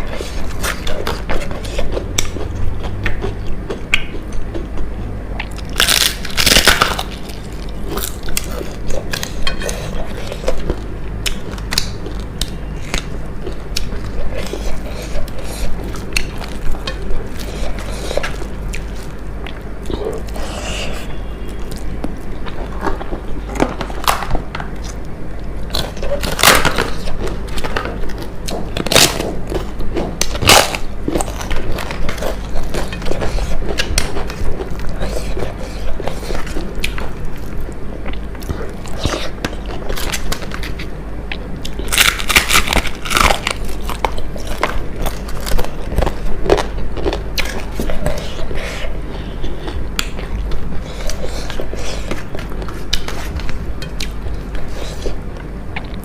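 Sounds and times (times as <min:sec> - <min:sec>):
crunching and chewing crisp food: 0:00.0 - 0:56.0
steady low hum: 0:00.0 - 0:56.0.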